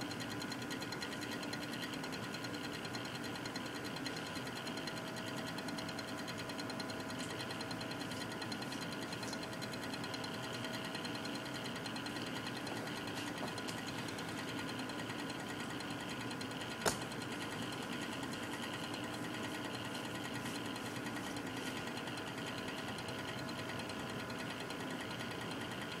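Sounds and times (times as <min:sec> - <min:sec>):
power supply fan hum: 0:00.0 - 0:26.0
rapid ticking: 0:00.0 - 0:26.0
sharp click: 0:16.7 - 0:17.2.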